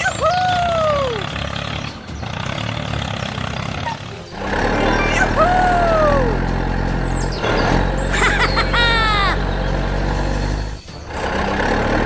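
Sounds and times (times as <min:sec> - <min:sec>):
vehicle engine droning: 0:00.0 - 0:12.0
high falling tones: 0:04.2 - 0:10.6.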